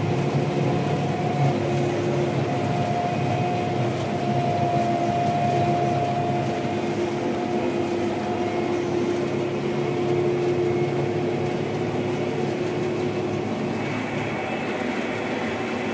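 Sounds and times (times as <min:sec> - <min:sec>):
combine harvester drone: 0:00.0 - 0:15.9
mechanical whine: 0:00.0 - 0:15.9.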